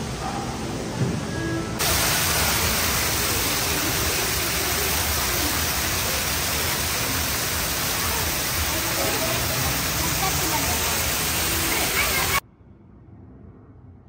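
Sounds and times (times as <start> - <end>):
steady rushing noise: 1.8 - 12.4.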